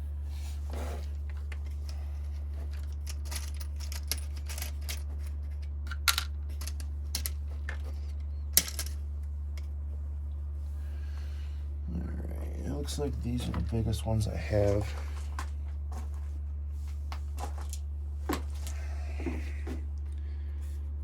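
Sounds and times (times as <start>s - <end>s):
steady low hum: 0.0s - 21.0s
small metal terminals clinking: 2.7s - 7.4s.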